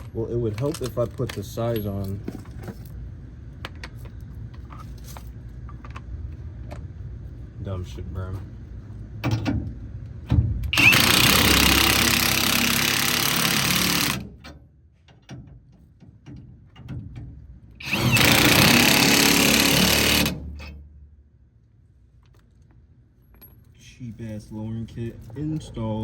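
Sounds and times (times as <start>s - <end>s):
tool and parts clanking: 0.0s - 2.8s
impact wrench whirring: 10.7s - 14.4s, 17.8s - 20.7s.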